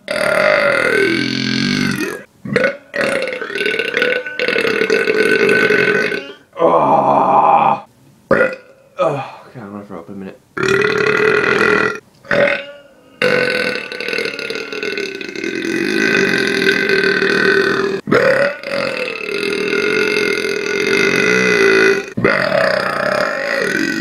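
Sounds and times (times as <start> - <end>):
long human burps: 0.0 - 9.5, 10.6 - 24.0.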